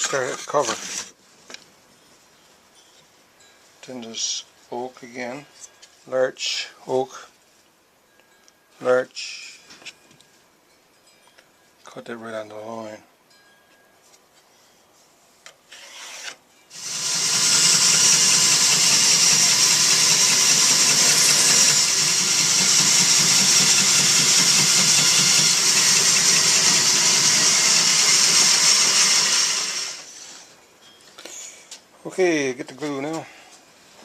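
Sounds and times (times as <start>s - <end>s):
electric woodworking machine on wood: 15.8s - 30.3s.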